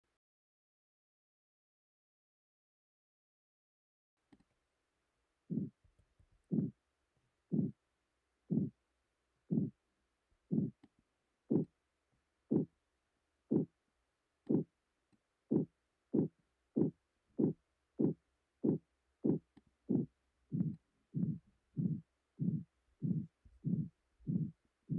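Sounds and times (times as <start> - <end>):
heartbeat-like pulsing: 5.5 - 5.8, 6.5 - 6.8, 7.5 - 7.8, 8.5 - 8.8, 9.5 - 9.8, 10.5 - 10.8, 12.5 - 12.7, 13.5 - 13.7, 14.5 - 14.7, 15.5 - 24.9.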